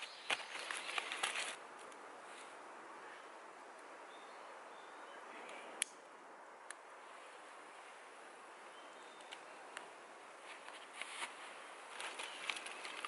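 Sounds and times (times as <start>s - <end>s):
crunching rustles on dry ground: 0.0s - 2.6s, 9.0s - 13.0s.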